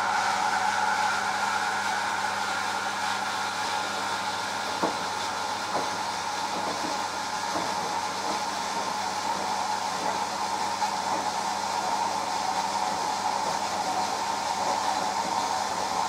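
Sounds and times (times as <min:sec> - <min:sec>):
washing machine whirring hum: 0:00.0 - 0:16.0.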